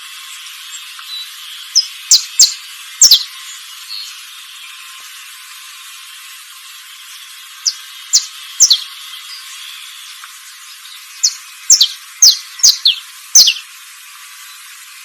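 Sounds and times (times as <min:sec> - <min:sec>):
songbird chirping: 0:00.7 - 0:04.2, 0:07.6 - 0:13.7.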